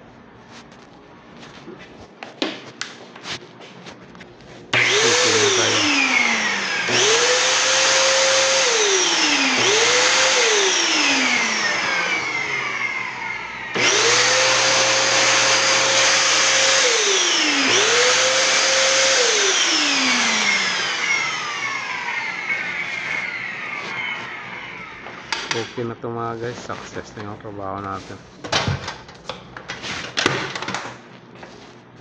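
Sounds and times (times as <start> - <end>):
vacuum cleaner motor whining: 4.6 - 30.8.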